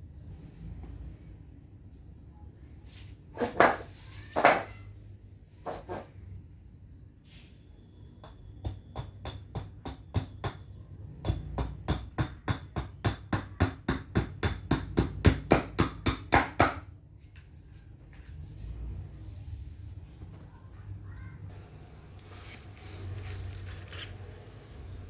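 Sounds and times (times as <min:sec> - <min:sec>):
hammer striking rapidly: 0:08.2 - 0:16.8.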